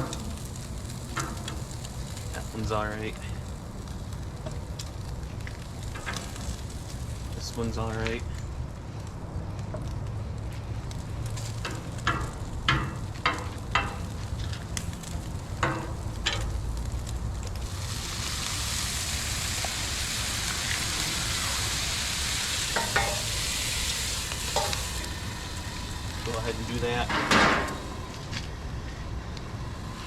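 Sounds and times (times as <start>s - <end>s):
bacon sizzling on griddle: 0.0s - 8.2s, 10.9s - 28.3s, 29.5s - 30.0s
metal utensil scraping steel: 22.7s - 25.1s.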